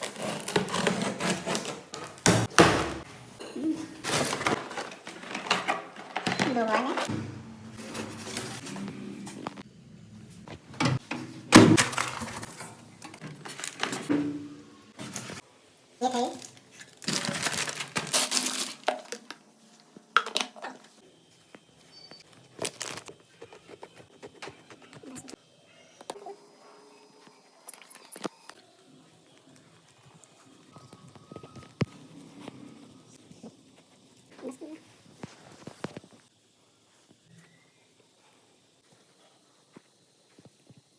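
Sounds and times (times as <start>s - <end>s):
packaging rustling and crinkling: 11.8s - 14.1s, 16.1s - 20.5s, 22.3s - 23.4s.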